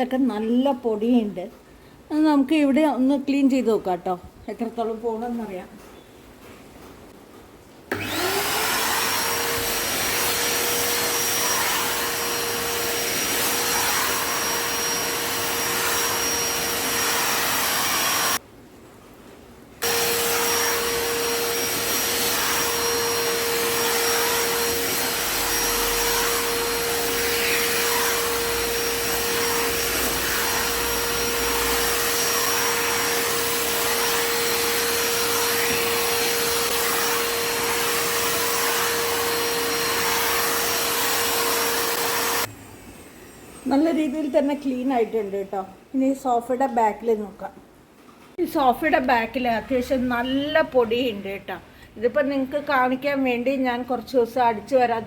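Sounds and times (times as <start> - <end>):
vacuum cleaner motor whine: 7.9 - 18.4, 19.8 - 45.8.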